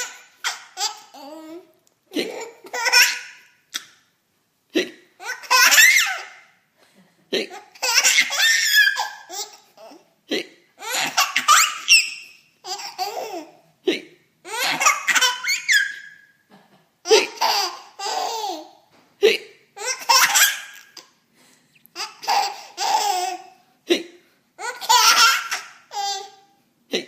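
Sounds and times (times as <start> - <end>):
child laughing high-pitched: 0.0 - 3.9, 5.2 - 6.5, 7.4 - 10.1, 10.8 - 13.6, 14.5 - 16.3.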